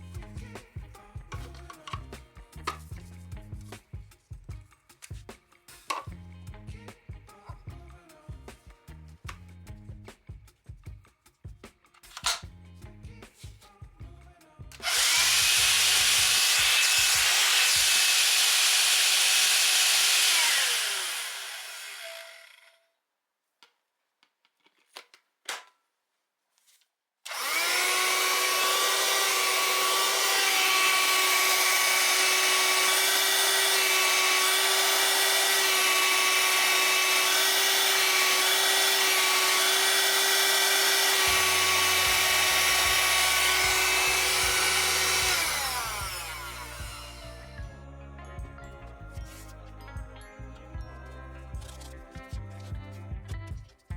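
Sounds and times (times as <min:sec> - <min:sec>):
hand-held vacuum cleaner motor: 0:14.8 - 0:22.8, 0:27.3 - 0:47.6.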